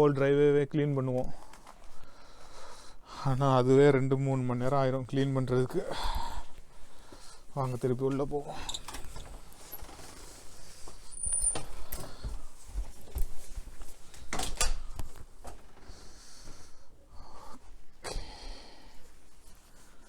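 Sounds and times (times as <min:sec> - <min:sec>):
footsteps: 0:06.4 - 0:16.6.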